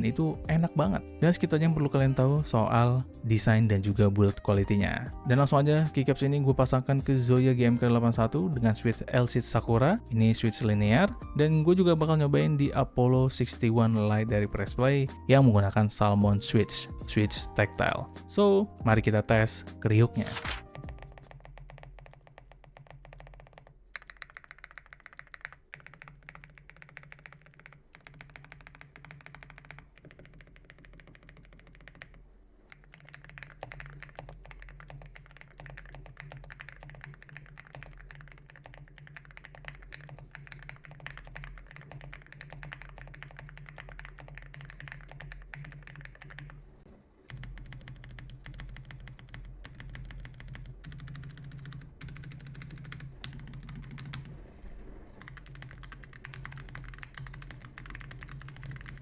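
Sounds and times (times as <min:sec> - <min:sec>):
mechanical keyboard typing: 0:00.0 - 0:46.7, 0:47.3 - 0:59.0.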